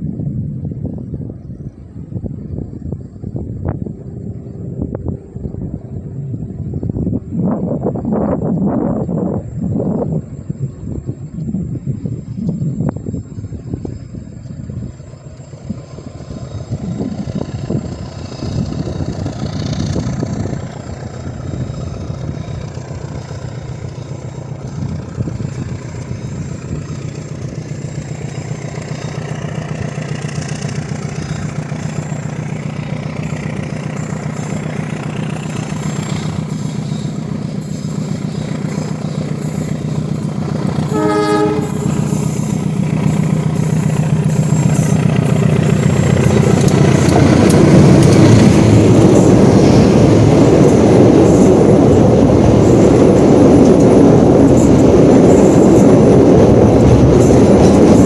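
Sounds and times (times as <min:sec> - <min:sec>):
train engine and wheels rumbling: 0:00.0 - 0:58.0
train horn blast: 0:40.7 - 0:42.6.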